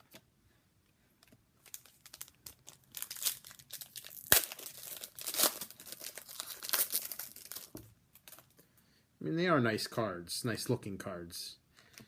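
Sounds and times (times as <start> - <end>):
foil wrapper crinkling and tearing: 1.6 - 8.5.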